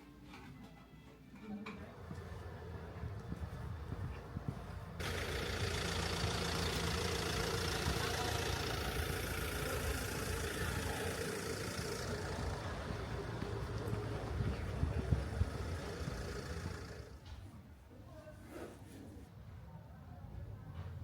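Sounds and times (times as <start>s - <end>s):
vehicle engine running: 1.9s - 17.2s
wide hiss: 5.0s - 17.2s.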